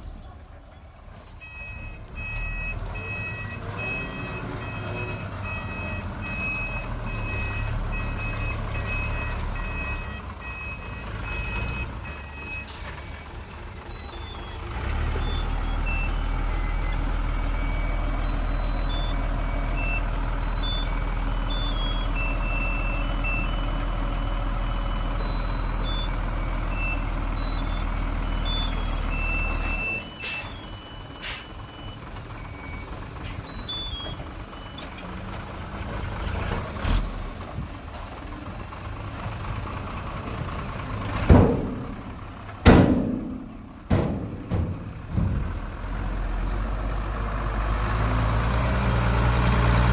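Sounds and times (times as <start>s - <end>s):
diesel engine running: 0.0s - 49.9s
reversing alarm beeping: 1.4s - 34.9s.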